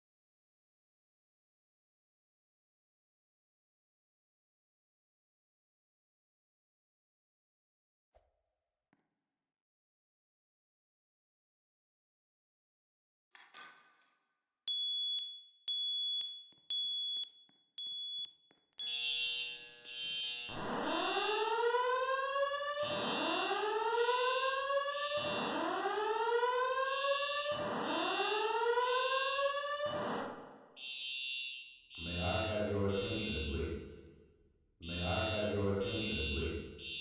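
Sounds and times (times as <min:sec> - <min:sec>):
short high beeps: 0:14.7 - 0:18.3.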